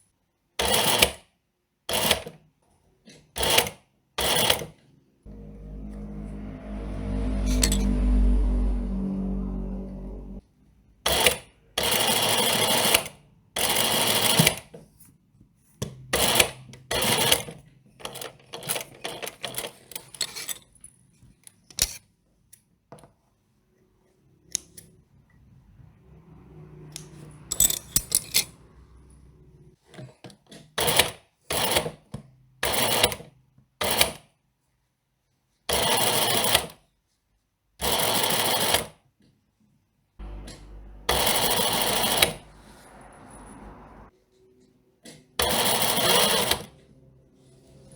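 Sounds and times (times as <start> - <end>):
sewing machine stitching: 0.6 - 1.2, 1.9 - 2.4, 3.4 - 6.3, 11.1 - 14.7, 16.2 - 20.3, 30.8 - 34.2, 35.7 - 36.8, 37.8 - 39.0, 40.2 - 43.7, 45.4 - 46.8.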